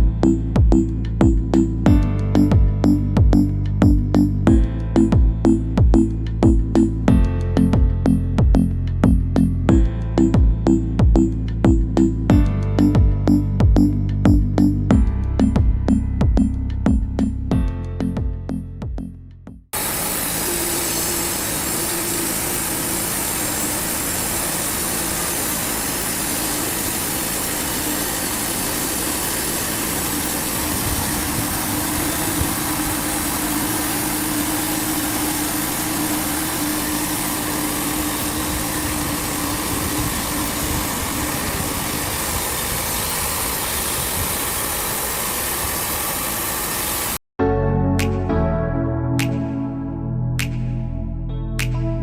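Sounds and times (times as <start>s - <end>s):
band sawmill running: 19.8s - 47.2s.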